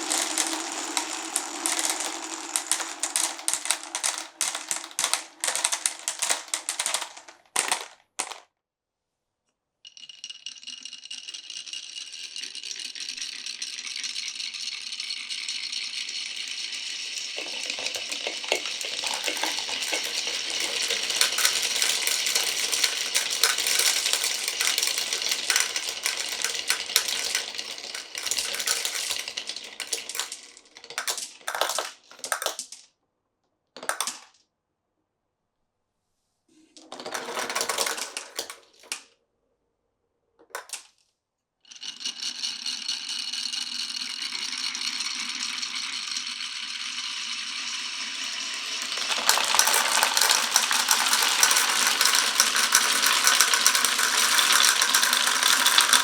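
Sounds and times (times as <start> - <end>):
marbles rattling down track: 0.0 - 8.4, 9.9 - 32.9, 33.8 - 34.3, 36.8 - 39.0, 40.5 - 40.9, 41.7 - 56.0.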